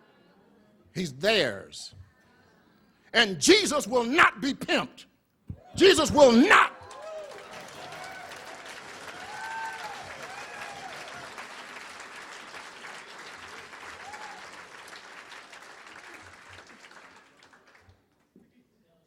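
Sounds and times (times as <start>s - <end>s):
voices calling out in approval: 5.5s - 7.1s
audience applauding: 5.7s - 18.0s.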